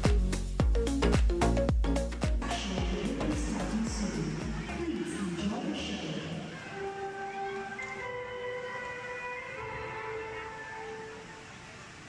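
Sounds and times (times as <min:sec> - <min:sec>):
kick drum beat: 0:00.0 - 0:04.9
repeating electronic melody: 0:00.0 - 0:05.0.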